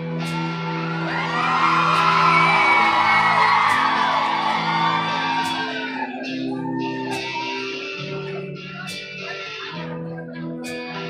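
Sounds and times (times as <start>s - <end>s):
crowd screaming and whooping: 0.0s - 8.5s
held guitar chords: 0.0s - 11.0s.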